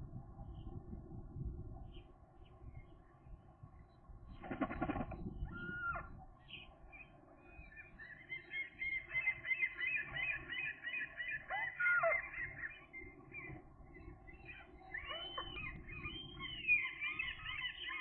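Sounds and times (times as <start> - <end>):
gulls calling: 8.3 - 18.0.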